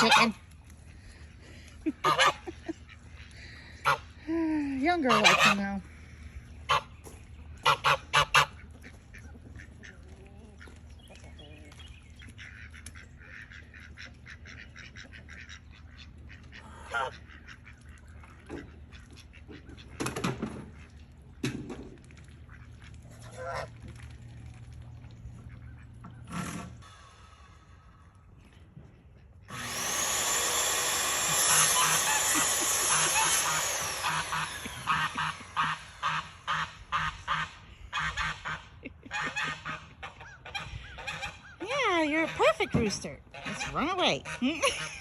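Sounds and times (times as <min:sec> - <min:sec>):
goose honking: 0:00.0 - 0:00.4, 0:02.0 - 0:04.2, 0:04.8 - 0:10.8, 0:12.2 - 0:21.0, 0:22.5 - 0:23.8, 0:31.2 - 0:44.9
ducks quacking: 0:00.0 - 0:21.5, 0:22.2 - 0:28.4, 0:29.0 - 0:45.0.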